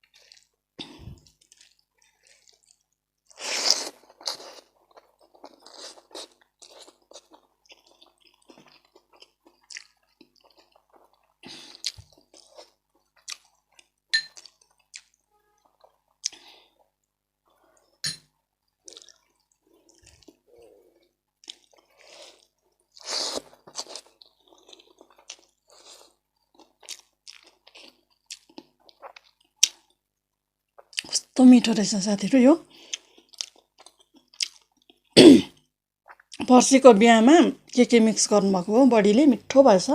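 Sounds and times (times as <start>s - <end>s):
close chewing with wet clicks: 0.0s - 0.6s, 1.2s - 16.8s, 18.8s - 20.4s, 21.0s - 31.2s, 32.8s - 35.2s.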